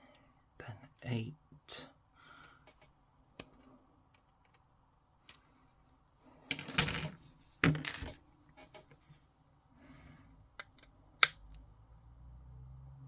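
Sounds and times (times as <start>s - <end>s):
plastic parts clattering: 6.5s - 8.2s
plastic parts clicking: 10.5s - 11.6s.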